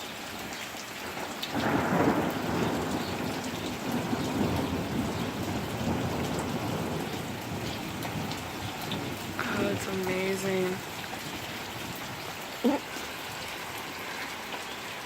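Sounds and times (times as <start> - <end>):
heavy rain: 0.0 - 15.0
thunder rumble: 1.1 - 12.3.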